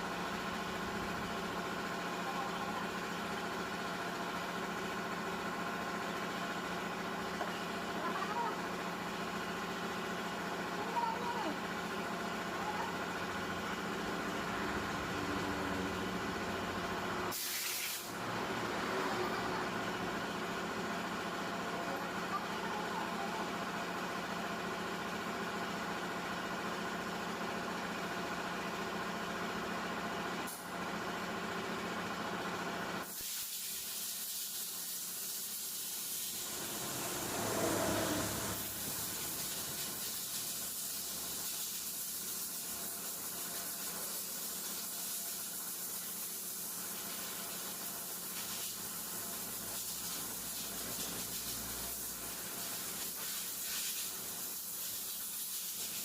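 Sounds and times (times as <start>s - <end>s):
steady mechanical hum: 0.0s - 56.0s
hiss of spraying: 17.3s - 18.2s, 33.0s - 56.0s.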